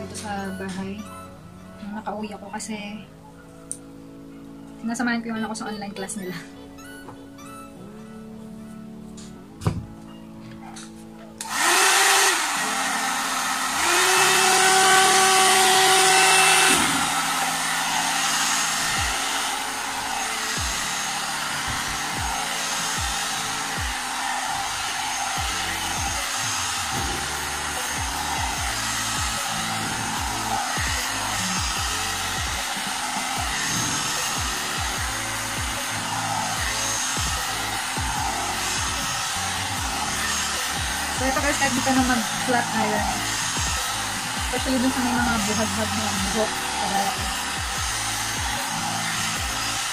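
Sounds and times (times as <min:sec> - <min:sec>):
hot air brush blowing: 0:11.4 - 0:49.9.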